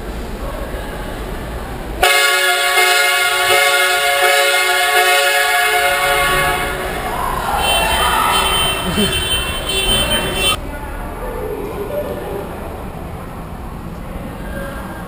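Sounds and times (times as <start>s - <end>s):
train horn blast: 2.0s - 10.6s.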